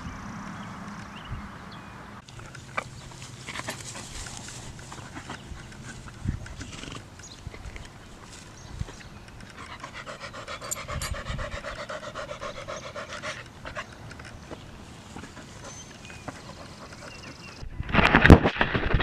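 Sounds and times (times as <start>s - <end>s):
dog panting: 9.5s - 14.0s, 15.0s - 17.6s.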